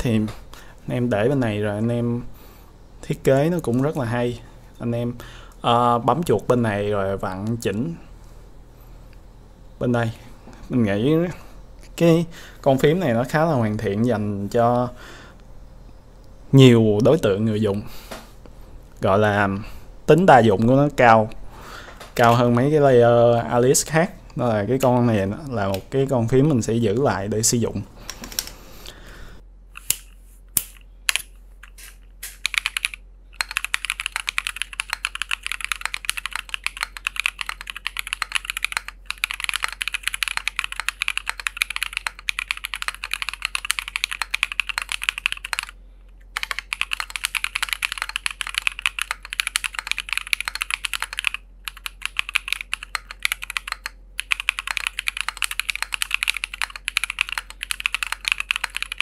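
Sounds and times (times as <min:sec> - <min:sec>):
mechanical keyboard typing: 0:32.2 - 0:45.8, 0:46.4 - 0:59.0.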